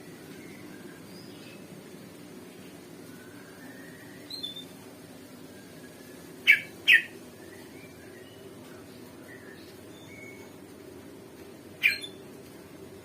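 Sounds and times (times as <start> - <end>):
bird chirps and whistles: 3.1 - 4.7, 5.5 - 8.4, 11.8 - 12.2
bird calling sharp notes: 6.4 - 7.2, 11.8 - 12.2.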